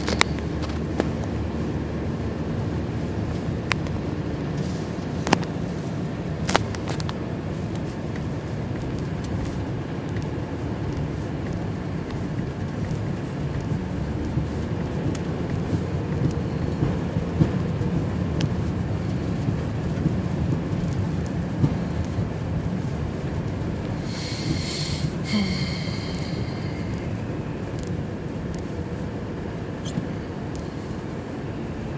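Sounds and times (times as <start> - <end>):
car road and wind noise: 0.0 - 31.9
light ticks: 6.5 - 22.2, 26.1 - 28.8, 29.8 - 30.7.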